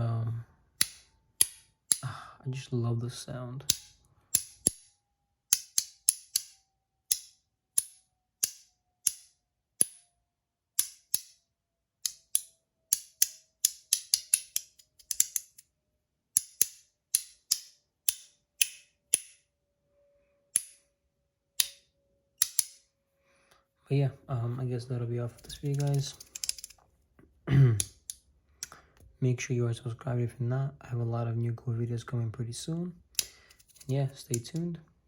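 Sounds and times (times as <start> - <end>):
magnetic fidget toy clicking: 25.4 - 26.8.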